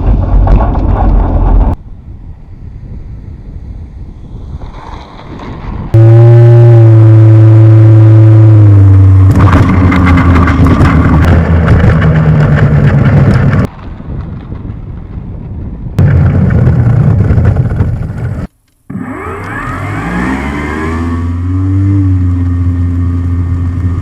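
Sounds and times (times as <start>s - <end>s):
wind buffeting microphone: 0.0s - 6.1s, 9.2s - 18.6s
model plane propeller drone: 1.8s - 13.6s, 18.9s - 24.0s.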